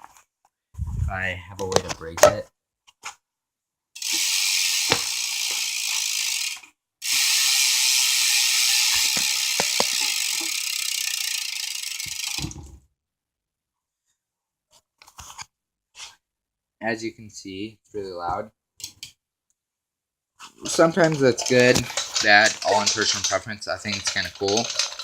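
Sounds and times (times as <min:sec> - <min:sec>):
bicycle hub freewheeling buzz: 0:04.0 - 0:12.6, 0:21.4 - 0:25.0.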